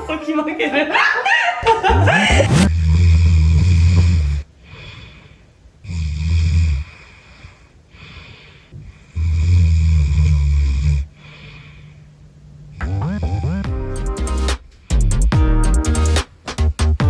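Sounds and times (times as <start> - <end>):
woman snoring: 2.0 - 4.4, 5.9 - 7.2, 9.2 - 11.1
soft breaths: 3.1 - 12.8.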